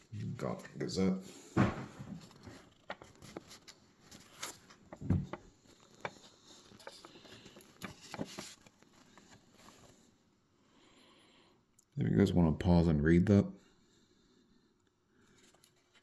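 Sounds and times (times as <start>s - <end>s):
soft thump: 1.6s - 2.2s
paper rustling: 1.6s - 10.2s, 15.3s - 16.0s.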